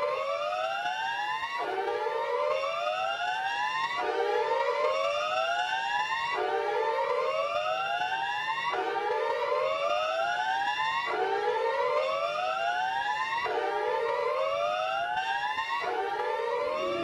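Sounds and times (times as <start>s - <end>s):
rising siren tone: 16.1s - 17.0s
faint steady high tones: 16.4s - 17.0s.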